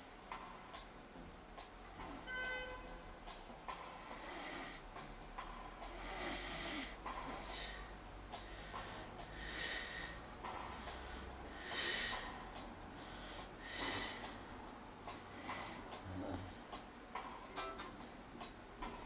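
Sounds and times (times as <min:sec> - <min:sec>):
snorting snores: 0:03.8 - 0:04.8, 0:05.8 - 0:07.8, 0:15.2 - 0:16.6
man snoring: 0:03.9 - 0:04.8, 0:05.9 - 0:07.8.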